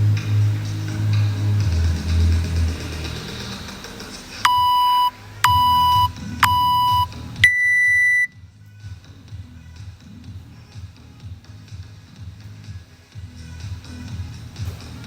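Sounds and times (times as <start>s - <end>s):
long higher beep: 4.5s - 8.3s
short timer beeps: 4.5s - 8.3s.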